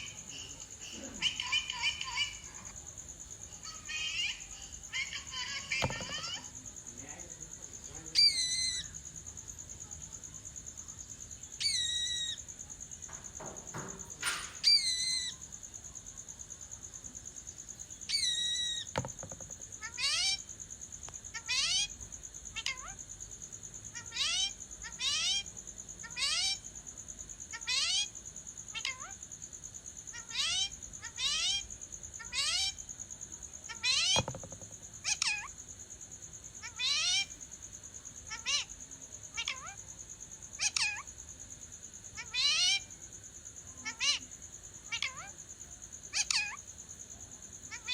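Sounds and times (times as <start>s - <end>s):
parrot calling: 0.0s - 2.8s, 3.6s - 6.6s, 8.1s - 9.0s, 11.6s - 12.4s, 13.7s - 15.4s, 18.1s - 20.5s, 21.3s - 23.0s, 23.9s - 26.6s, 27.5s - 28.1s, 28.7s - 29.2s, 30.1s - 32.8s, 33.7s - 35.6s, 36.6s - 37.4s, 38.3s - 38.7s, 39.3s - 39.8s, 40.6s - 41.1s, 42.1s - 42.9s, 43.8s - 44.3s, 44.9s - 45.4s, 46.1s - 46.6s, 47.7s - 47.9s.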